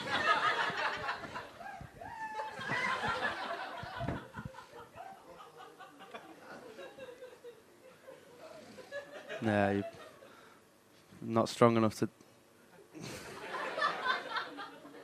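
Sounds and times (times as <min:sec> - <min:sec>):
audience laughing: 0:00.0 - 0:01.6, 0:02.4 - 0:10.2, 0:13.0 - 0:15.0.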